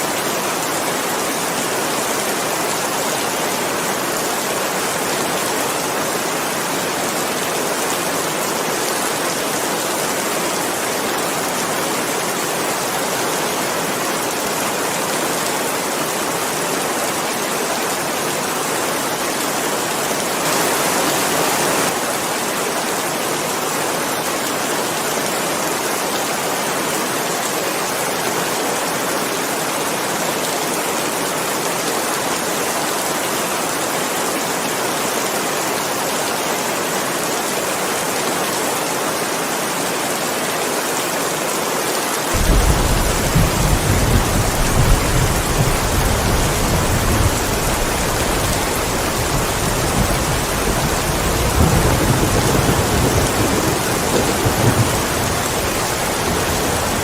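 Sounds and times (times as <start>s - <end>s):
heavy rain hissing: 42.3s - 57.0s.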